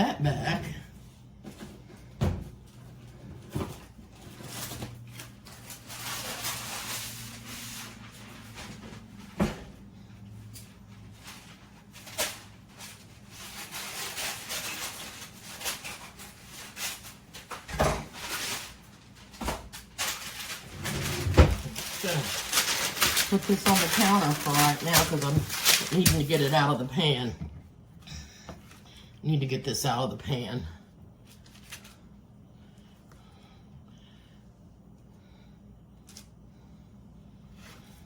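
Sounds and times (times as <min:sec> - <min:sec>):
knocks and clunks of objects: 0:01.4 - 0:02.6, 0:20.7 - 0:23.8
low steady hum: 0:20.0 - 0:38.0.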